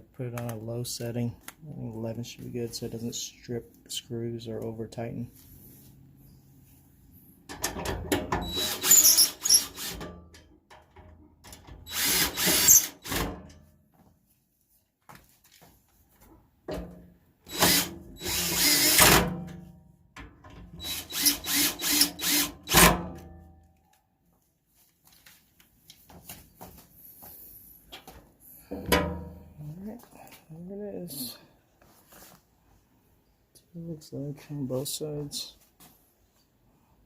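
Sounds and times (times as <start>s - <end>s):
power drill driving screws into metal: 8.4s - 10.1s, 11.7s - 13.3s, 17.5s - 19.3s, 20.8s - 23.0s.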